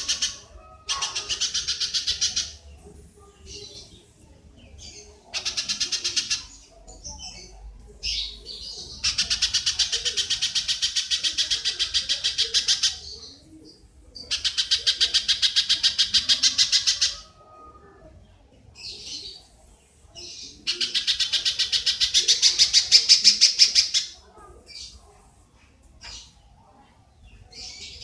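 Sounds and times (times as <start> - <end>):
rapid harsh chattering call: 0.0 - 4.0, 4.8 - 13.4, 14.2 - 17.4, 20.2 - 25.0.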